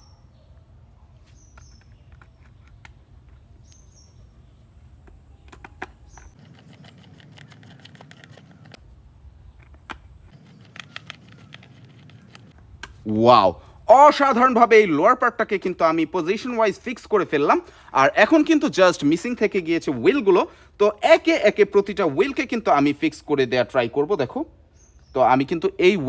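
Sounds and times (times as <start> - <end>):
screws clicking into plastic: 5.5 - 8.8.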